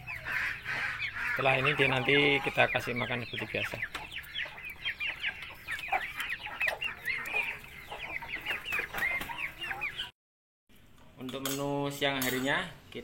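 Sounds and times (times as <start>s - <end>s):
chickens clucking: 0.0s - 10.1s
chickens chirping: 0.0s - 10.2s.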